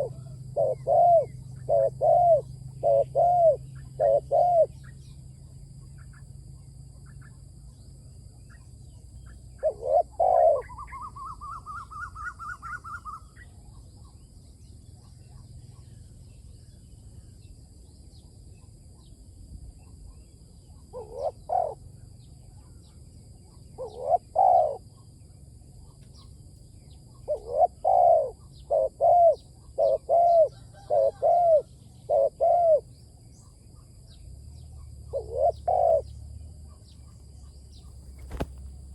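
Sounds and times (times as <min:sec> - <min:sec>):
dove cooing: 0:00.0 - 0:04.7, 0:09.6 - 0:13.2, 0:20.9 - 0:21.9, 0:23.8 - 0:24.9, 0:27.3 - 0:32.9, 0:35.1 - 0:36.1, 0:38.1 - 0:38.9.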